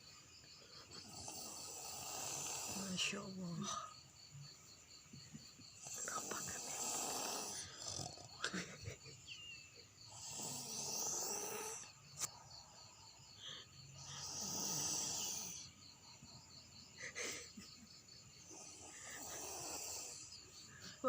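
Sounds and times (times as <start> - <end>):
crickets chirping: 0.0 - 21.0
person snoring: 1.0 - 3.2, 5.8 - 8.5, 10.1 - 11.9, 14.0 - 15.7, 18.5 - 20.3.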